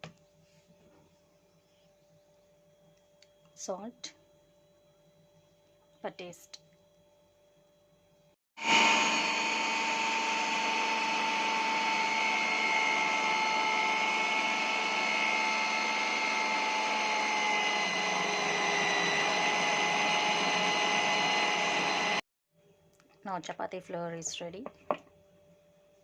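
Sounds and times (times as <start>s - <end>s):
kitchen mixer motor whining: 8.6s - 22.2s.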